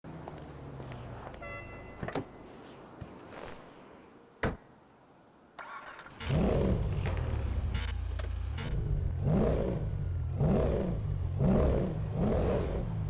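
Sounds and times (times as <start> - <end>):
car engine running and revving: 6.2 - 13.0.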